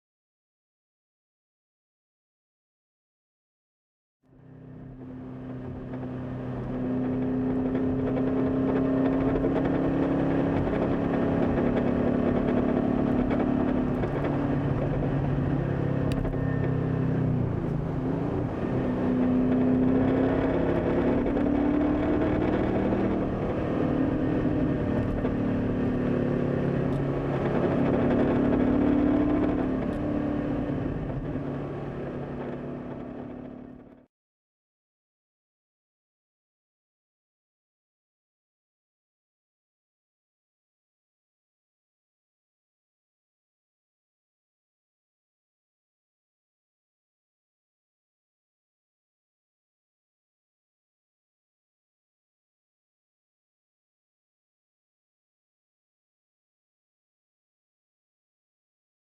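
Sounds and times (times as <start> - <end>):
car engine running: 4.4 - 19.6, 20.2 - 34.0
vibration under car: 21.0 - 34.0.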